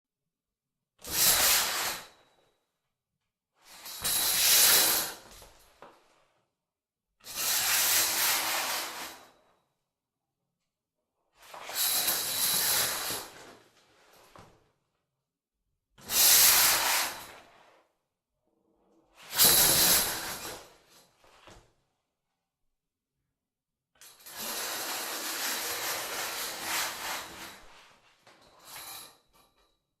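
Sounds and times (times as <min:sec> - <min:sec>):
shower curtain rings sliding: 0:24.4 - 0:29.4.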